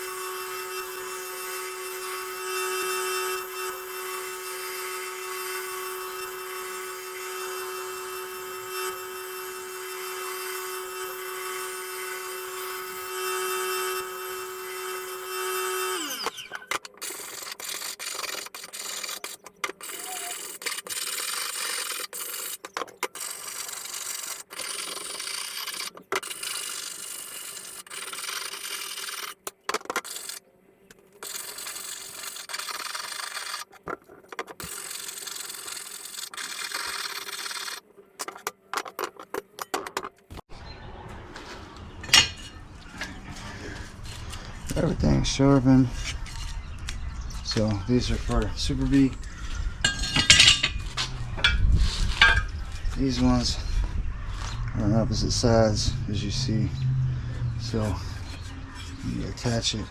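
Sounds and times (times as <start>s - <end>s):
grinder spinning down: 0.0s - 30.4s, 31.2s - 33.8s, 34.6s - 37.8s, 49.8s - 59.9s
grinder whining: 0.0s - 59.9s
scraping and rubbing: 16.2s - 40.4s, 45.9s - 56.6s, 57.2s - 59.9s.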